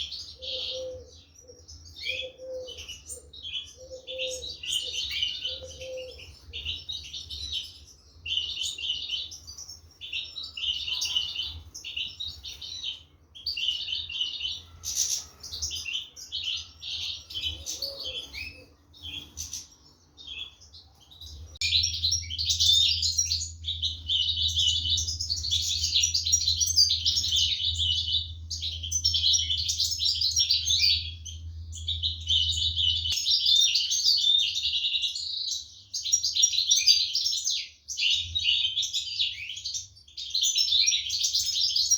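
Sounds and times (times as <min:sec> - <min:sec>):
finches chirping: 0:00.0 - 0:41.9
low steady hum: 0:21.2 - 0:33.5.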